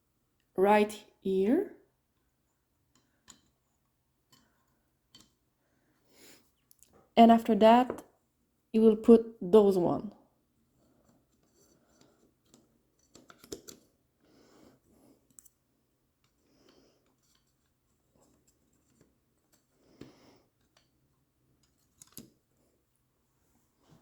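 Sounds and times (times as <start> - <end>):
clicks and scrapes of small parts handled: 2.1 - 5.5, 10.6 - 23.0.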